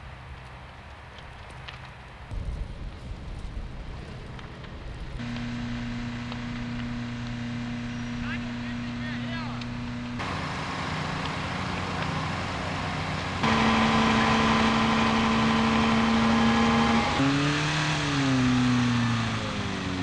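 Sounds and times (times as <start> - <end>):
engines running: 4.1 - 20.0.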